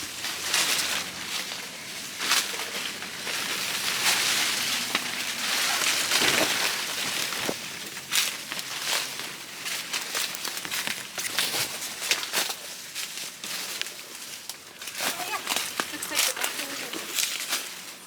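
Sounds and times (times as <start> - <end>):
footsteps in vegetation: 0.0 - 18.0
leaves and brush rustling: 0.0 - 18.0.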